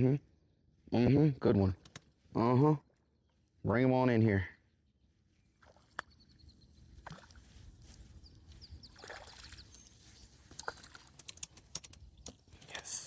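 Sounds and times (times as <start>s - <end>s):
water sloshing and splashing: 7.0s - 7.6s, 8.9s - 11.6s.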